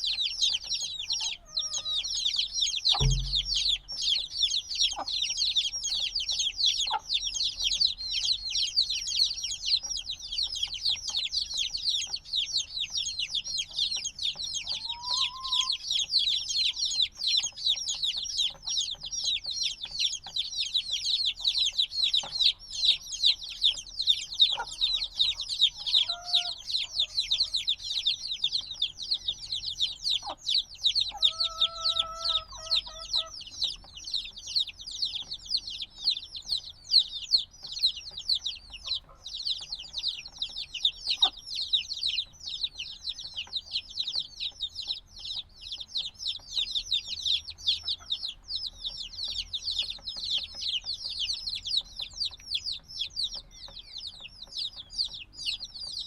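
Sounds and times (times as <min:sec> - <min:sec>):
chicks cheeping: 0:00.0 - 0:56.0
lower steady call: 0:03.0 - 0:03.8.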